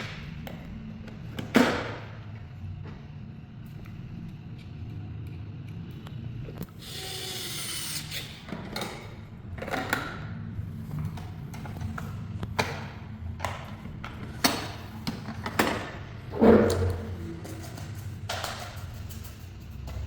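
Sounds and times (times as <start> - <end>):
knocks clicks and scrapes of parts: 8.2 - 20.0.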